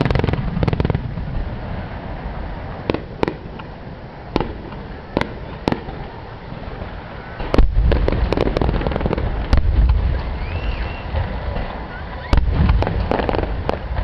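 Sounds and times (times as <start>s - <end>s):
firework shells bursting: 2.8s - 14.0s.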